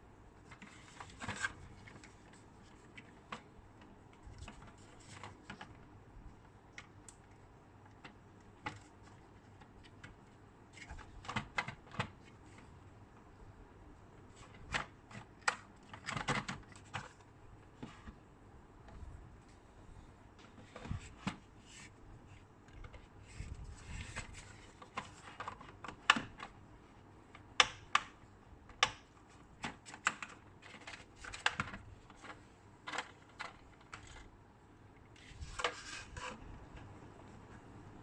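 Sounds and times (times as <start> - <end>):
plastic parts clicking and knocking: 6.7 - 12.7, 14.4 - 17.9, 27.3 - 34.3.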